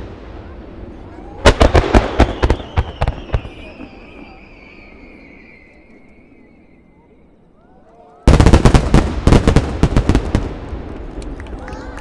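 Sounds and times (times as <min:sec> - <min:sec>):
fireworks bursting and crackling: 0:00.0 - 0:06.8, 0:08.2 - 0:12.0
fireworks rising whistles: 0:00.0 - 0:07.6.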